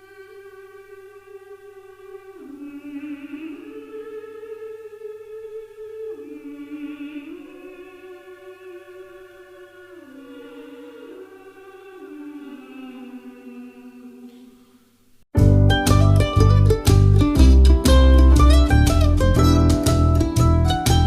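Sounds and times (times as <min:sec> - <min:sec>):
wordless choir-like tones: 0:00.0 - 0:15.2.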